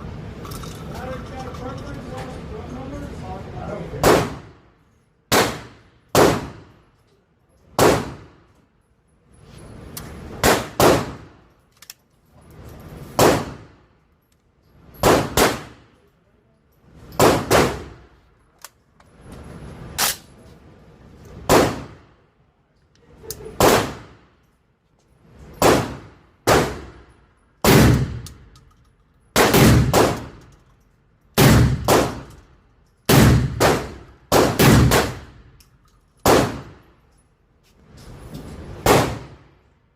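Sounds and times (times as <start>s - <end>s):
shotgun shots: 4.0s - 4.6s, 5.3s - 6.7s, 7.8s - 8.4s, 10.4s - 11.3s, 13.2s - 13.7s, 15.0s - 15.9s, 17.2s - 18.0s, 21.4s - 22.0s, 23.6s - 24.2s, 25.6s - 27.0s, 27.6s - 28.2s, 29.4s - 30.4s, 31.4s - 32.3s, 33.1s - 35.5s, 36.2s - 36.8s, 38.8s - 39.5s.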